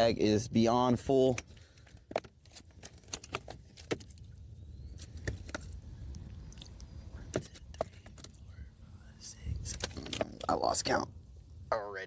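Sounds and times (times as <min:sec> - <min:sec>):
low steady rumble: 0:05.6 - 0:12.0.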